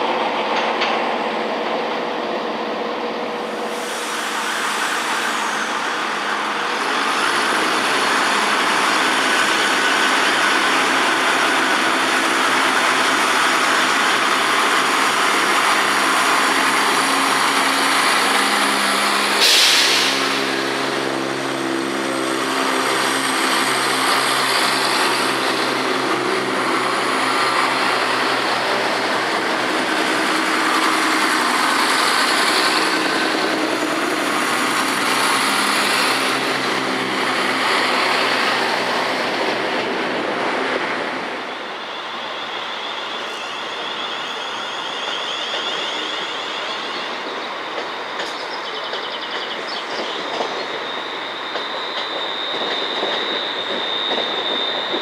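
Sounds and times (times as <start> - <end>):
train machinery droning: 0.0 - 55.0
air brake hiss: 3.5 - 6.0, 19.3 - 20.9.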